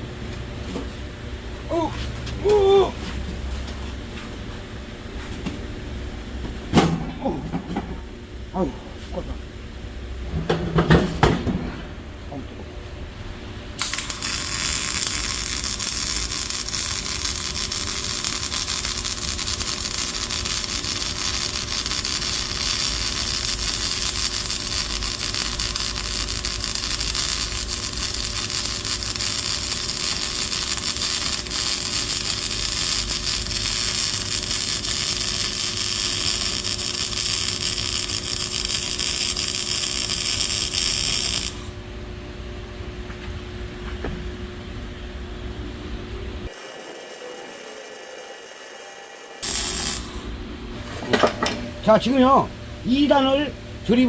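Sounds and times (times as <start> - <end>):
small electric motor tool whirring: 13.8 - 41.7, 46.5 - 50.2.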